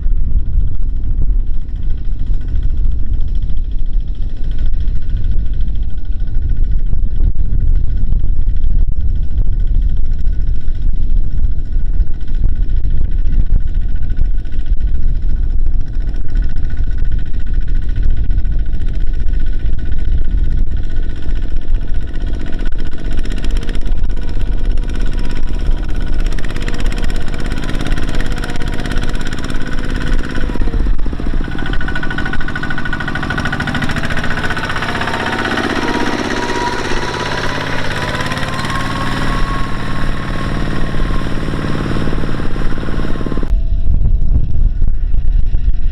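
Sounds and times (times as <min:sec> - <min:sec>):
high whine: 0:00.0 - 0:45.9
heavy diesel engine rumbling: 0:21.0 - 0:43.6.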